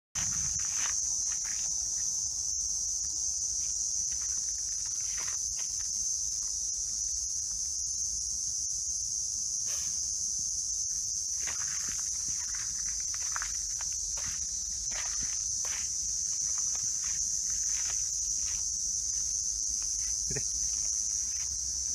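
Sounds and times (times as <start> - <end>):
faint scuffing footsteps: 0.2 - 2.2, 2.9 - 6.6, 11.4 - 21.9
insects buzzing: 0.2 - 21.9.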